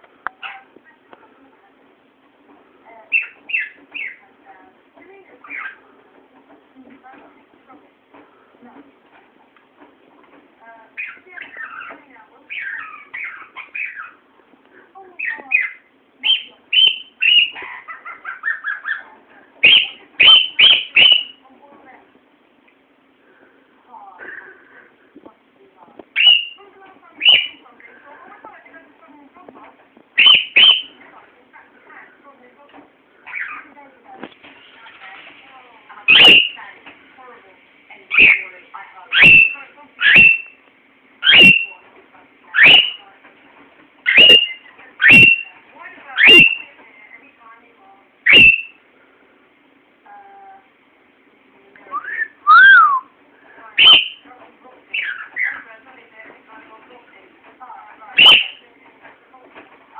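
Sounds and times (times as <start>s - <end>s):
cockatiel chirping: 3.1s - 4.2s, 5.4s - 5.8s, 11.0s - 14.2s, 15.2s - 21.4s, 26.2s - 26.6s, 30.2s - 31.0s, 36.1s - 36.6s, 38.1s - 38.5s, 39.1s - 40.6s, 41.2s - 41.8s, 42.6s - 43.0s, 44.1s - 45.5s, 46.2s - 46.7s, 48.3s - 48.8s, 53.8s - 54.2s, 54.9s - 55.7s, 58.2s - 58.6s
cockatiel shrill calls: 19.6s - 21.4s, 26.2s - 26.6s, 30.2s - 30.9s, 36.1s - 36.6s, 39.1s - 40.6s, 41.2s - 41.7s, 42.6s - 43.0s, 44.1s - 45.5s, 46.2s - 46.7s, 48.3s - 48.8s, 53.8s - 54.2s, 58.2s - 58.6s.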